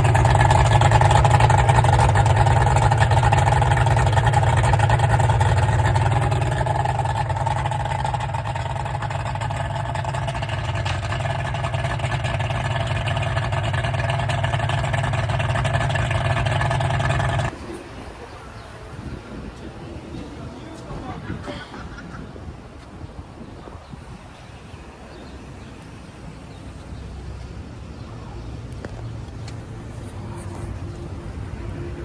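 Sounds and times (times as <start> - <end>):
outboard motor idling: 0.0 - 17.6.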